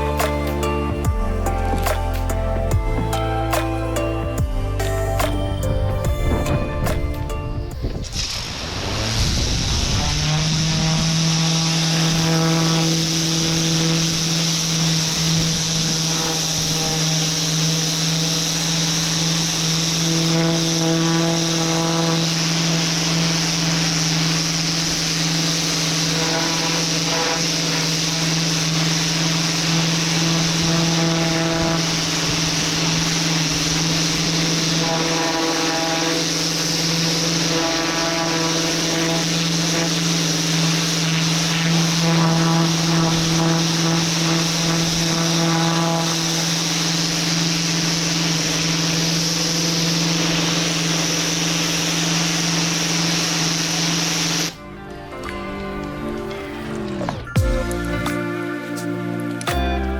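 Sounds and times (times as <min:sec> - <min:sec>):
pressure washer motor hum: 0:00.0 - 0:59.4
water jet spraying on concrete: 0:07.9 - 0:54.6.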